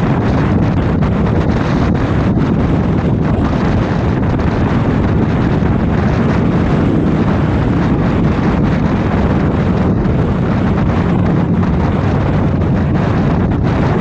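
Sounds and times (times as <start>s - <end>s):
motorcycle engine running: 0.0s - 14.0s
wind rush on microphone: 0.0s - 14.0s.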